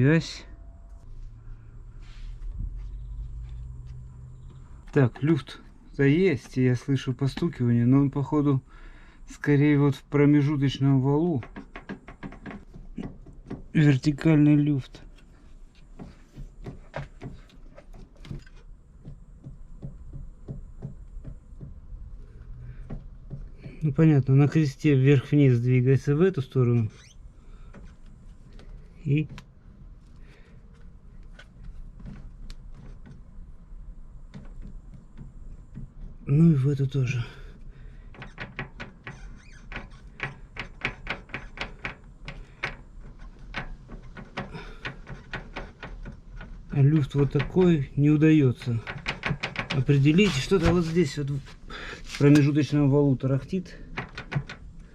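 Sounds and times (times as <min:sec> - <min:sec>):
driveshaft joint knocking: 0:11.3 - 0:15.0, 0:15.9 - 0:23.9, 0:34.2 - 0:52.5, 0:53.6 - 0:54.9.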